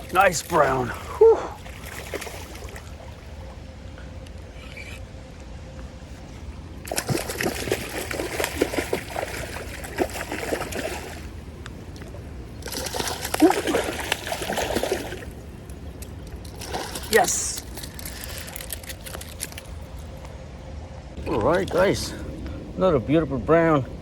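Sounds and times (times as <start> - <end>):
creek water running: 0.0 - 4.9, 6.2 - 19.9, 21.2 - 22.3
fish splashing at surface: 12.6 - 15.3.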